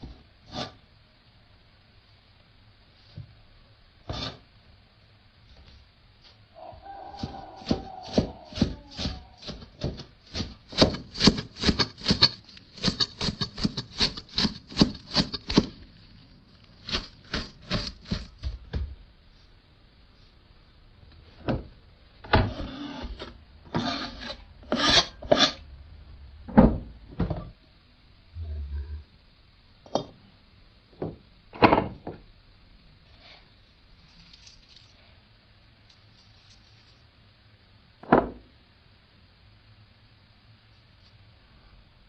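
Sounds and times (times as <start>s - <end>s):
rapid scraping strokes: 10.2s - 16.1s.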